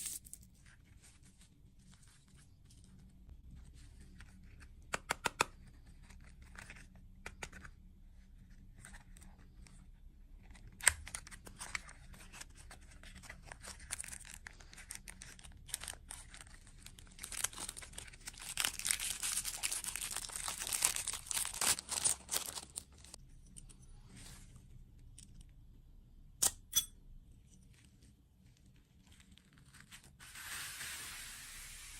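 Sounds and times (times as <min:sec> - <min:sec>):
wrapper crinkling and tearing: 0:13.4 - 0:23.2.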